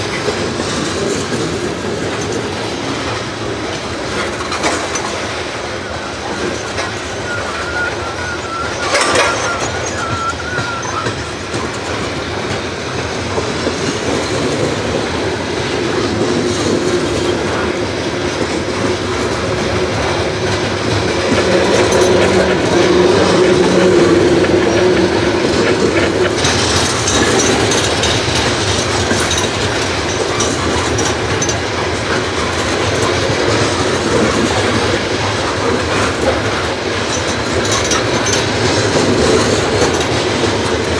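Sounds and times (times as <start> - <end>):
train wheels clacking: 0.0 - 40.9
high squeal: 4.7 - 12.4.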